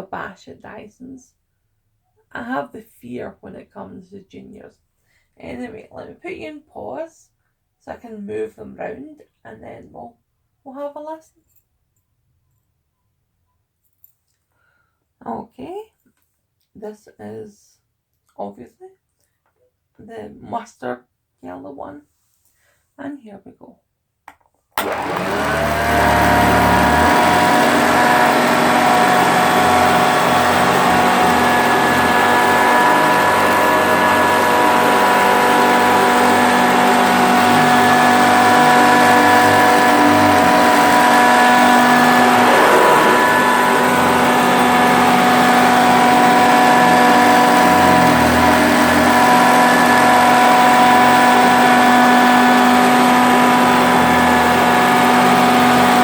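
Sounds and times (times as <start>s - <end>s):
vacuum cleaner motor whining: 24.8s - 56.0s.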